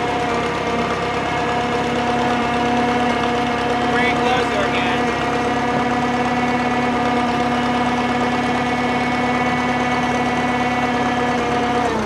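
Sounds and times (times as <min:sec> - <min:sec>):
crane engine running: 0:00.0 - 0:12.0.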